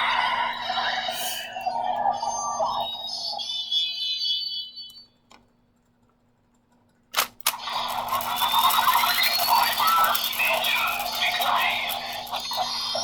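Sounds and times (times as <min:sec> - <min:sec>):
ringing electronic tone: 0:00.0 - 0:05.2
toy electronic effects and music: 0:07.5 - 0:13.0.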